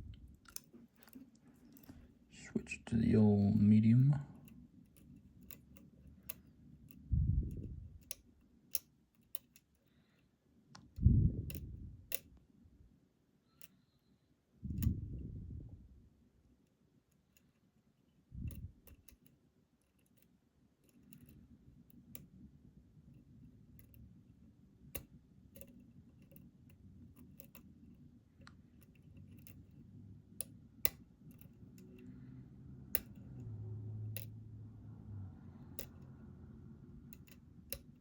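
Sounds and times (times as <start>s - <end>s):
lock pick clicking and scraping: 0.0s - 2.2s, 4.4s - 12.4s, 18.4s - 22.4s, 23.1s - 34.4s, 35.6s - 36.2s, 37.0s - 38.0s.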